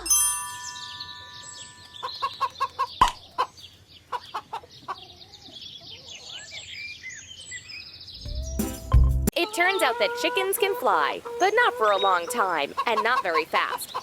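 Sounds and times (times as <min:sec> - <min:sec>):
small birds chirping: 0:00.6 - 0:14.0
chickens clucking: 0:01.8 - 0:06.6, 0:09.4 - 0:14.0.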